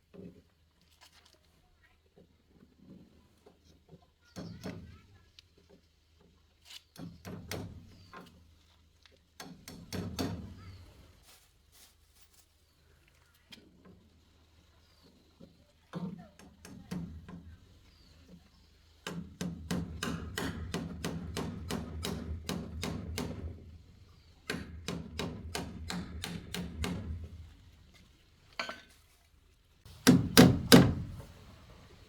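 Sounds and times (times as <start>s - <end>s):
hammer blows: 29.9s - 32.0s.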